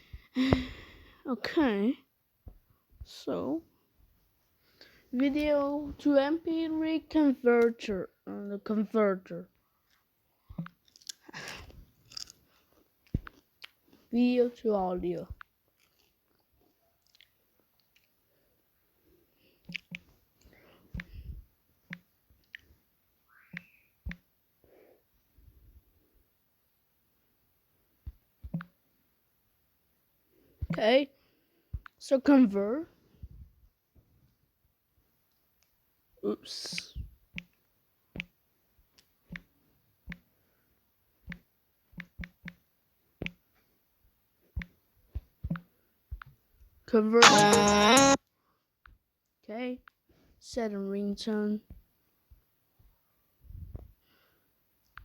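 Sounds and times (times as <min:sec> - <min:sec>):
faint clicks and taps: 0:13.0 - 0:14.1, 0:19.7 - 0:22.8, 0:28.0 - 0:28.8, 0:36.7 - 0:40.3, 0:41.2 - 0:42.6, 0:43.2 - 0:43.7, 0:44.4 - 0:46.8.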